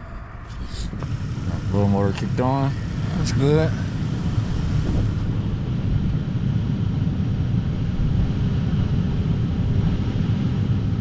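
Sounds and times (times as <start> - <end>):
heater blower motor running: 0.0 - 11.0.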